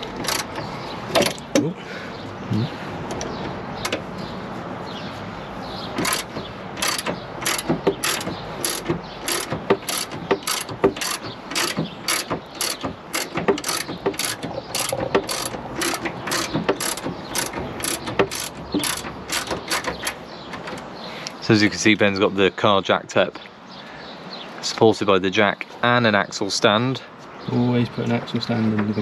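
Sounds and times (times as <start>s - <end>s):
socket ratchet clicking: 0.0s - 0.6s, 6.0s - 20.8s.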